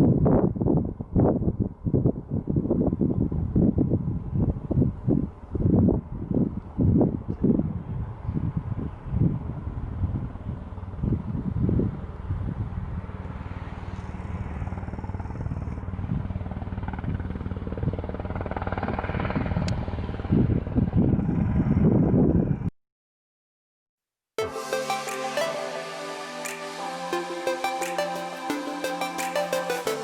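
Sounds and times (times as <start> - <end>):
wind rumbling on microphone: 0.0 - 22.7.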